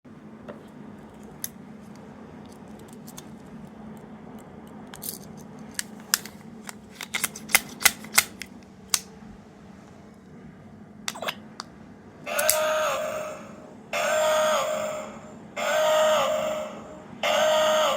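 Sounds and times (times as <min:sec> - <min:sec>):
steady low hum: 0:00.1 - 0:17.9
plastic parts clicking: 0:02.4 - 0:09.1, 0:12.4 - 0:12.6.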